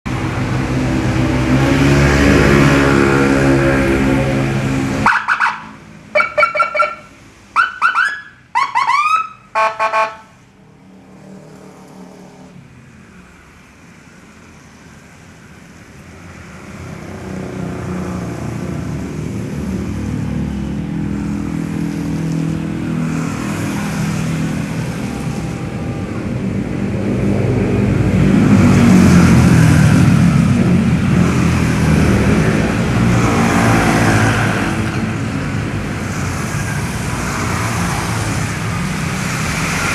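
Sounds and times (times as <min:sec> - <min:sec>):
vehicle passing: 0:00.1 - 0:07.4, 0:10.1 - 0:39.9
police siren whoops and yelps: 0:07.6 - 0:09.7.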